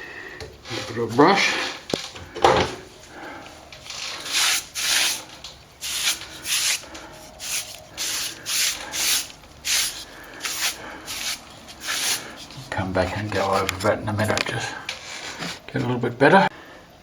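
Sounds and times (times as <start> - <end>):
brush swishing on plaster: 3.8 - 13.9, 14.9 - 15.7.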